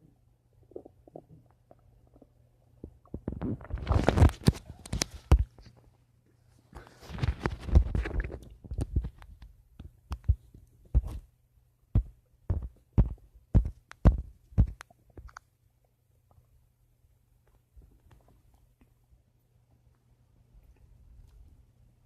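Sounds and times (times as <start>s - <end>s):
stomach gurgling: 0.0s - 5.5s, 7.0s - 9.4s.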